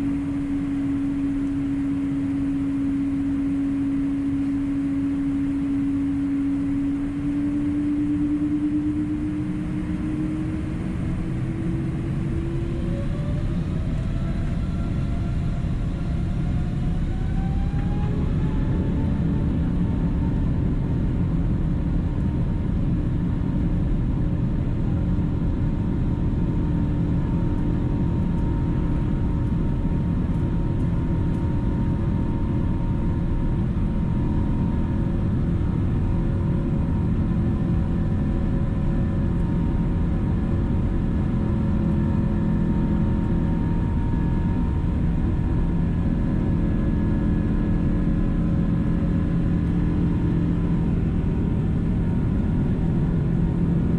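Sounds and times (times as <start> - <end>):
steady whining tones: 0.0 - 21.2
airliner engine rumble in cabin: 0.0 - 53.9.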